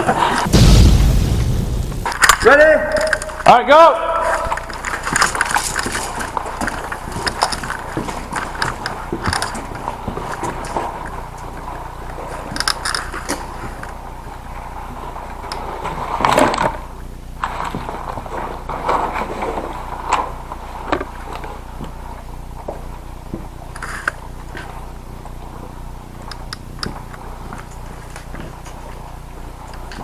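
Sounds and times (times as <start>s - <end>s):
low hum: 0.5s - 2.4s.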